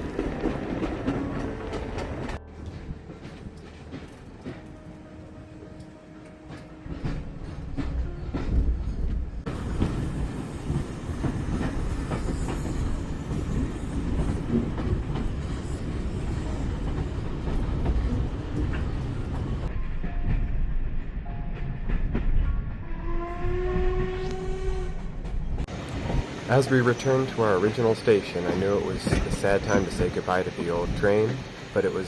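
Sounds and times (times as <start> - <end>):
steam train rumbling: 0.0 - 32.0
steam whistle: 22.9 - 25.0.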